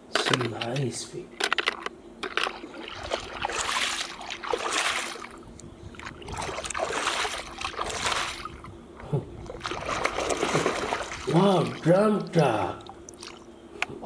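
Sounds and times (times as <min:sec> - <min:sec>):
toy vehicles knocking: 0:00.2 - 0:02.6
water sloshing and splashing: 0:00.2 - 0:13.6.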